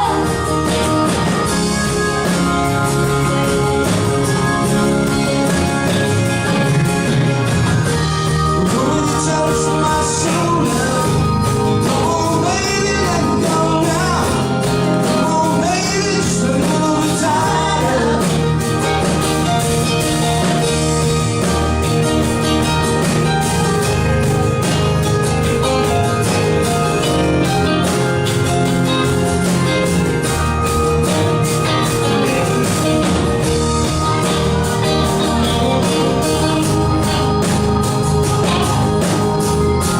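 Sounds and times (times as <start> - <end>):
person singing: 0.0 - 0.8, 8.2 - 18.9
rock band playing: 0.0 - 39.9.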